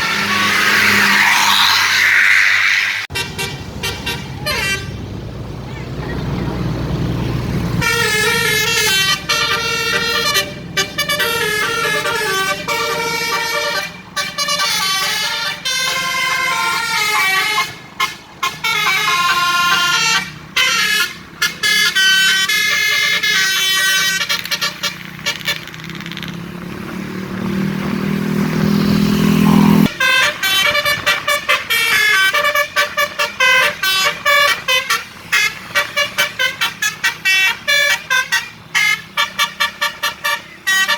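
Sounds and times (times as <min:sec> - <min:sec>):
low rising tone: 0:00.0 - 0:03.1, 0:28.5 - 0:30.0
musical bus horn playing a tune: 0:03.1 - 0:05.0, 0:07.8 - 0:25.7, 0:29.3 - 0:40.9.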